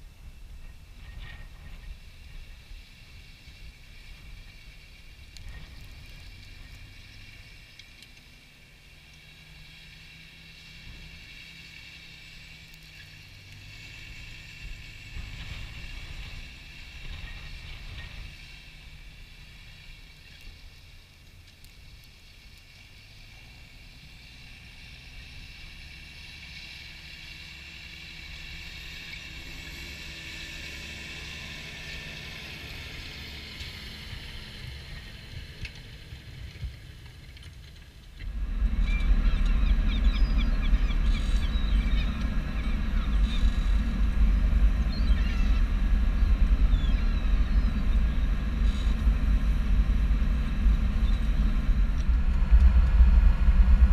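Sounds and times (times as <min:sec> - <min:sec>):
loud close engine rumble: 0:00.0 - 0:53.9
tractor engine whining: 0:27.2 - 0:53.9.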